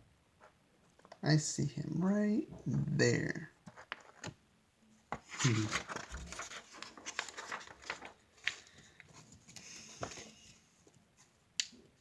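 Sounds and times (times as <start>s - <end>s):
paper rustling: 3.7s - 4.4s, 5.1s - 10.6s.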